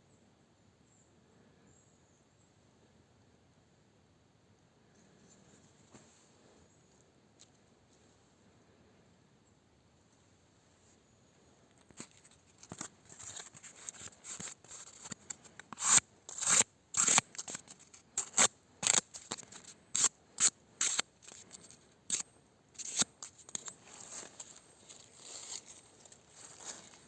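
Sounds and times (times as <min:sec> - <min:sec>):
knife cutting strokes: 0:13.1 - 0:22.2, 0:22.8 - 0:23.7.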